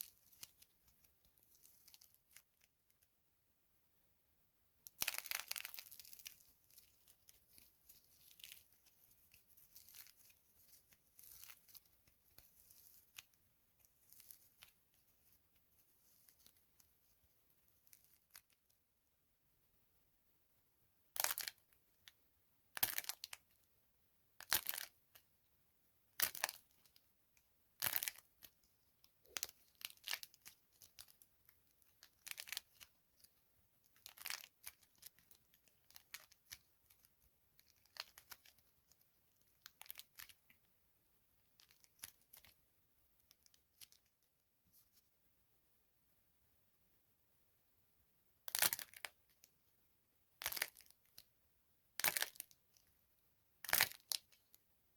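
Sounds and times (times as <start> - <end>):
dry soap crackling and crunching: 0.0 - 3.0, 4.9 - 17.0, 22.7 - 23.6, 24.4 - 25.2, 26.2 - 27.0, 27.8 - 40.6, 41.6 - 42.6, 48.5 - 49.5, 50.4 - 51.3, 52.0 - 52.9, 53.6 - 54.6.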